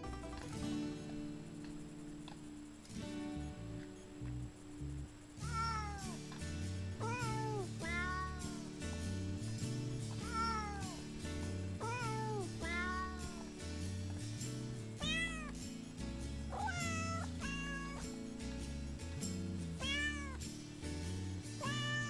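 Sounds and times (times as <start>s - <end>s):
bass and chord backing: 0.0s - 22.0s
cat meows sung in tune: 5.4s - 6.2s, 7.0s - 8.7s, 10.2s - 11.0s, 11.8s - 13.5s.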